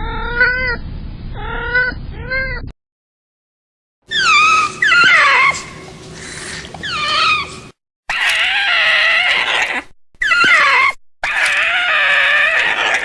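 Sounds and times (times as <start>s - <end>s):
creature screeching cries: 4.1s - 5.8s, 6.8s - 13.0s.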